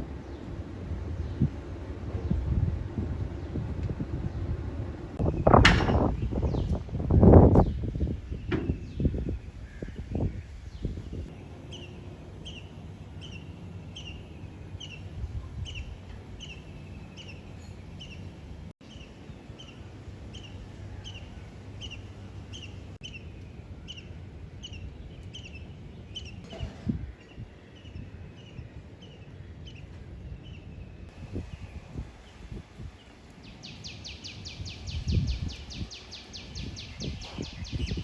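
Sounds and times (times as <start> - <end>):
bird chirping: 7.6 - 26.4, 33.5 - 38.0.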